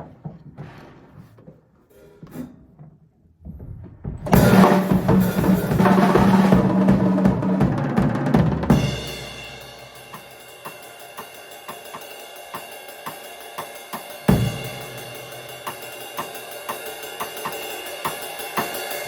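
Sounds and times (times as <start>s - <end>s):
drum kit playing: 4.2s - 19.0s.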